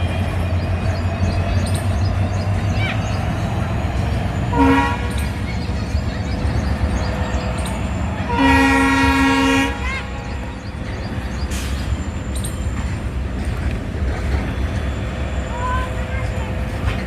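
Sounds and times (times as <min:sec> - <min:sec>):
freight train rumbling: 0:00.0 - 0:17.0
locomotive horn blast: 0:04.5 - 0:05.4, 0:08.2 - 0:10.6.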